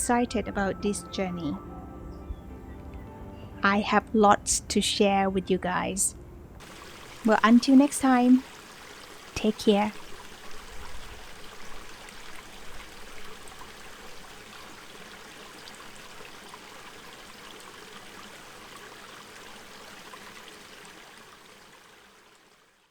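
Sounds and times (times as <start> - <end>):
stream water flowing: 6.6 - 22.9.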